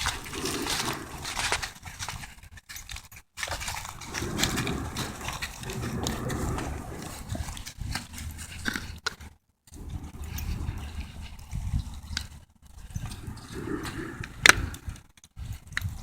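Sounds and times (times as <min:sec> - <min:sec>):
strange noise with low rumble: 0:03.5 - 0:16.0.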